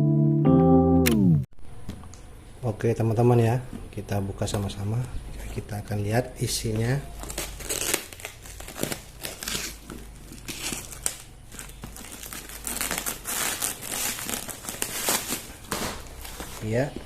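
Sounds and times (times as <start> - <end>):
packaging tearing: 7.1 - 16.9
packaging crinkling: 7.1 - 17.0.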